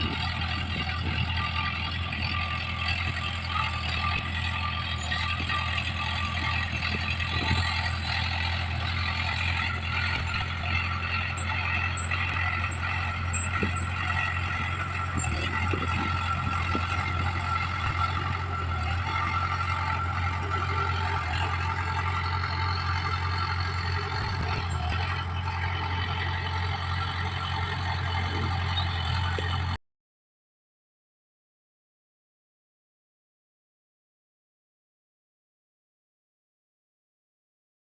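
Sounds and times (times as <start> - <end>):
bulldozer diesel engine running: 0.0 - 29.8.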